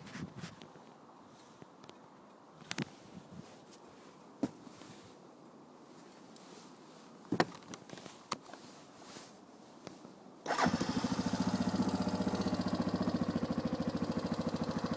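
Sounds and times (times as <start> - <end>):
atv engine idling: 10.5 - 14.9.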